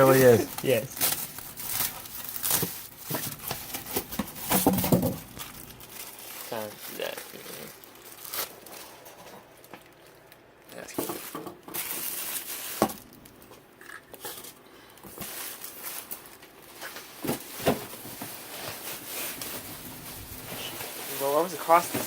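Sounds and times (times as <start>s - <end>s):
packaging rustling and crinkling: 0.0s - 13.6s, 14.2s - 22.0s.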